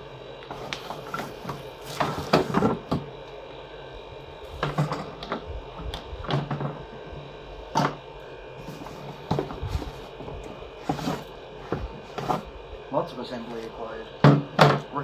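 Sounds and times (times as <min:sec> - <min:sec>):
cardboard and plastic packaging rustling: 0:00.5 - 0:02.8.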